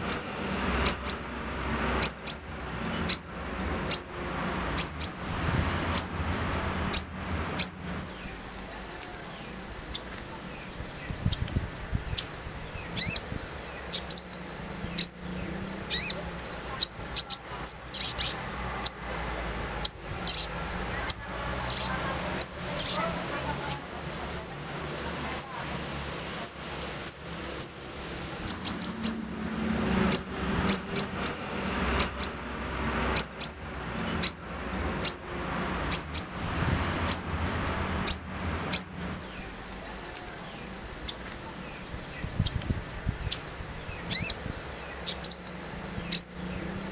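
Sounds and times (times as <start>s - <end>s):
bird chipping: 0.0s - 1.3s, 2.0s - 4.2s, 4.8s - 6.2s, 6.9s - 8.5s, 9.3s - 19.1s, 19.8s - 23.1s, 26.4s - 29.3s, 30.1s - 31.4s, 32.0s - 32.4s, 33.2s - 33.6s, 34.2s - 35.3s, 35.9s - 36.4s, 37.0s - 37.4s, 38.0s - 39.6s, 40.4s - 46.6s.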